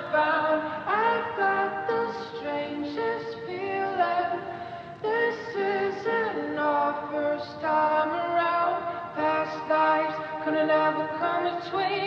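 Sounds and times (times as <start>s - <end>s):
woman singing: 0.0s - 12.0s.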